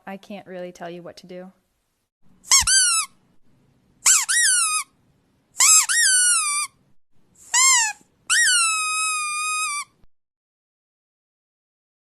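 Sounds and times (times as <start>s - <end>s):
squeaky toy squeaking: 2.4s - 3.2s, 4.0s - 5.0s, 5.6s - 6.8s, 7.4s - 10.0s.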